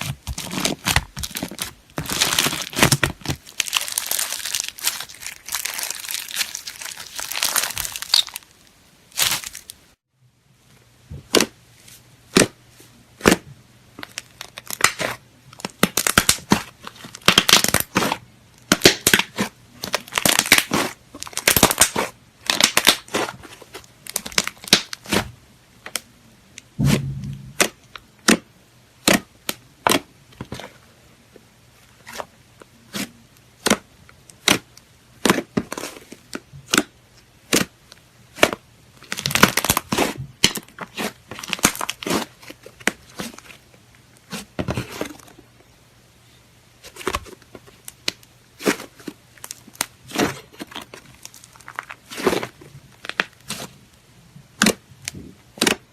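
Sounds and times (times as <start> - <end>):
slime squishing and popping: 0.0 - 8.5, 9.1 - 9.7, 14.1 - 23.4, 24.1 - 25.3, 36.6 - 37.7, 55.6 - 55.8.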